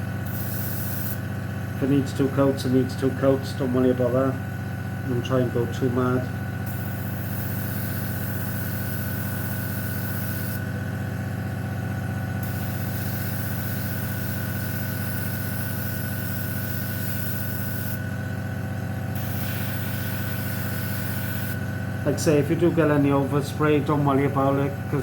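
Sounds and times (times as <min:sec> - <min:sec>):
compressor humming: 0:00.0 - 0:25.0
airbrush hissing: 0:00.2 - 0:01.3, 0:06.6 - 0:10.8, 0:12.4 - 0:18.1, 0:19.1 - 0:21.7.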